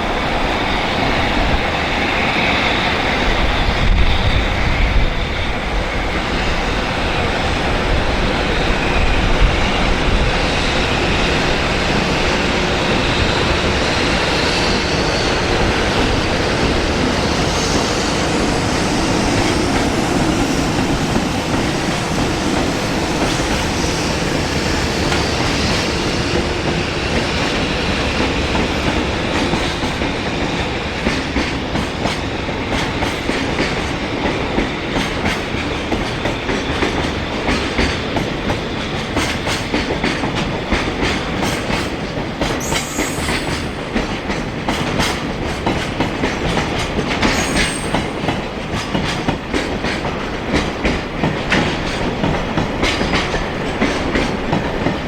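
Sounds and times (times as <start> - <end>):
freight train rumbling past: 0.0 - 55.0
wheels clacking over rail joints: 31.0 - 55.0.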